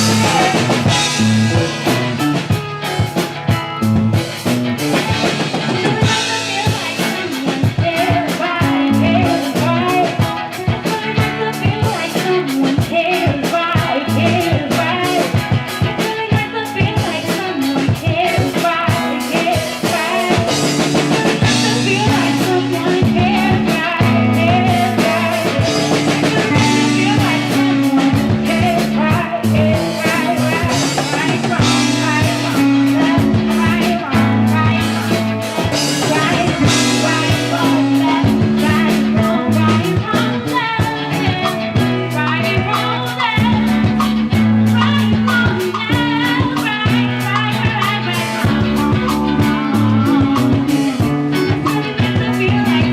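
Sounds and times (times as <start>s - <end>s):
bass line: 0.0s - 52.9s
drum kit steady beat: 0.0s - 52.9s
guitar playing: 0.0s - 52.9s.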